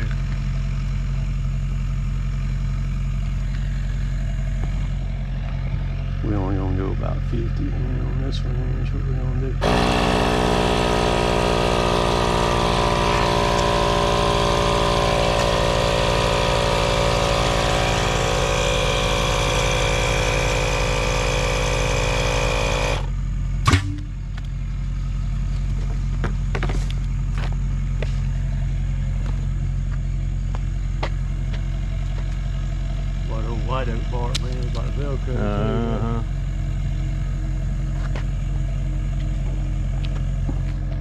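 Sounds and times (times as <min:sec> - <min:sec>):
engine idling: 0:00.0 - 0:41.0
machine whine: 0:02.6 - 0:41.0.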